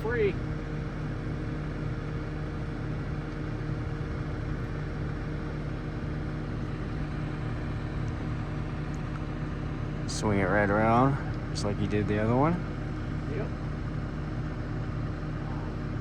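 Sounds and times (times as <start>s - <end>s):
engine running steadily: 0.0s - 16.0s.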